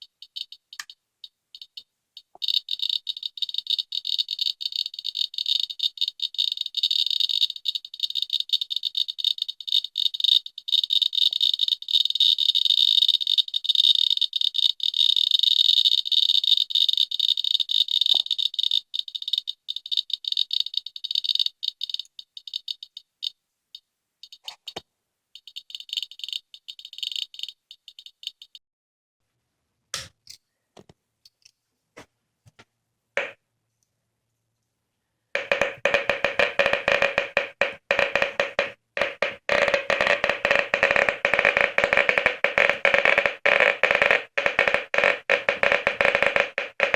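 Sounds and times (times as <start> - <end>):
geiger counter clicking rapidly: 0.0 - 23.3, 24.2 - 24.8, 25.4 - 28.6, 35.4 - 46.9
sharp separate clicks: 0.2 - 7.9.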